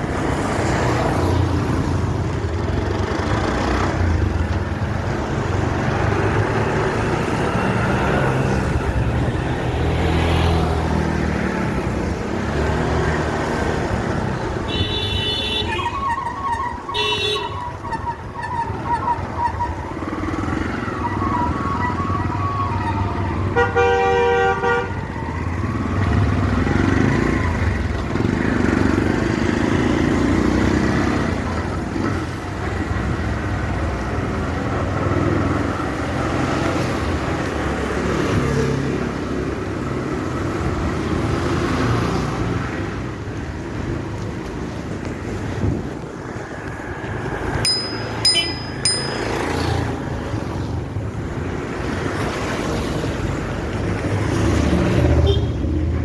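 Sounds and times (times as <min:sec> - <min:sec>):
traffic engine and road noise: 0:00.0 - 0:56.0
vehicle horn toots: 0:14.6 - 0:16.0, 0:17.0 - 0:17.7, 0:23.6 - 0:25.0, 0:55.2 - 0:55.7.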